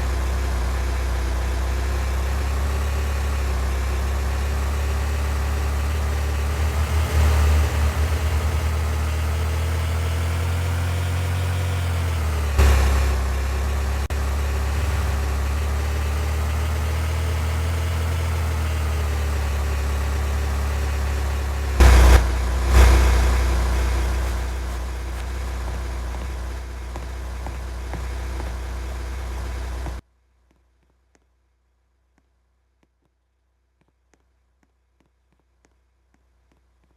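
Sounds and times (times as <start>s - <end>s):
car engine running: 0.0s - 30.0s
faint engine whine: 0.0s - 30.0s
thumps: 21.6s - 30.0s.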